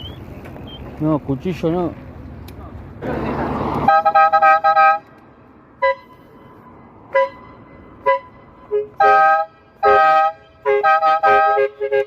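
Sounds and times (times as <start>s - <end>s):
horn tooting: 3.7s - 5.1s, 5.8s - 6.4s, 7.1s - 12.0s.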